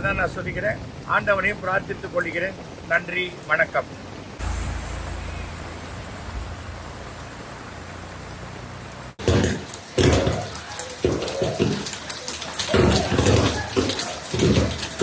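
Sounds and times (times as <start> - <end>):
rain hissing: 0.0 - 15.0
heavy rain thumps: 4.1 - 15.0.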